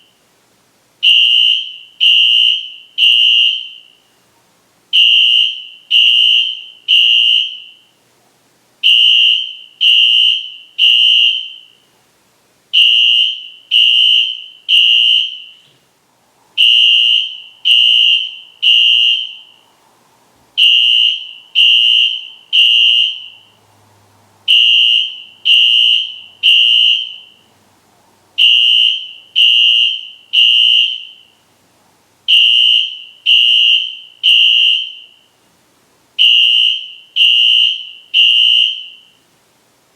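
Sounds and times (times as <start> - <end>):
fire alarm horn blasts: 1.0 - 4.1, 4.9 - 8.0, 8.8 - 11.9, 12.7 - 15.7, 16.6 - 19.6, 20.6 - 23.6, 24.5 - 27.5, 28.4 - 31.4, 32.3 - 35.4, 36.2 - 39.2.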